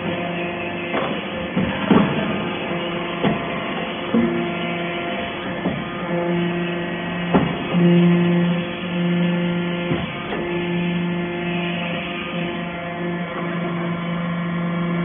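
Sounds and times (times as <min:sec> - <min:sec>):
sharp knocks: 0:00.9 - 0:02.4, 0:03.1 - 0:04.6, 0:05.5 - 0:06.1, 0:07.3 - 0:07.8, 0:09.8 - 0:10.4.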